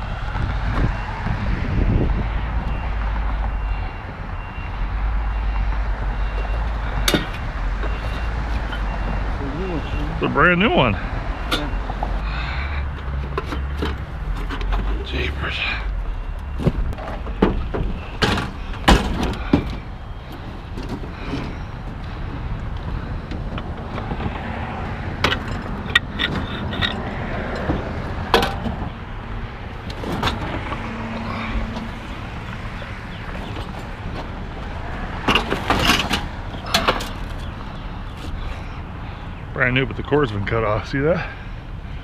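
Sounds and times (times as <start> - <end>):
heavy metal equipment clattering: 16.5 - 24.3, 29.8 - 37.6.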